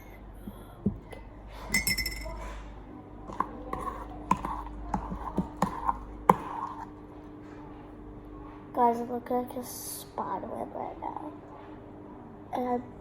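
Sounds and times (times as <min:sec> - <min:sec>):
utensil tapping a mixing bowl: 0:03.3 - 0:06.8.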